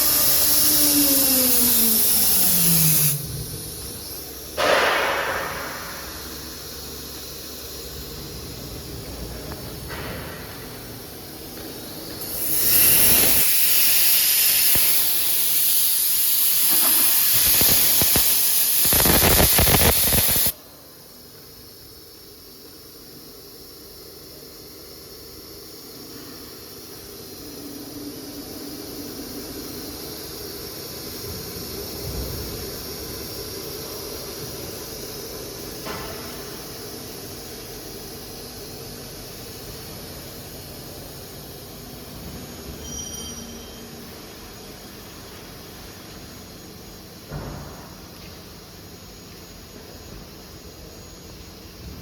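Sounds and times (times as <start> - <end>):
machine humming: 0.0 - 21.0
machine hissing air: 0.0 - 52.0.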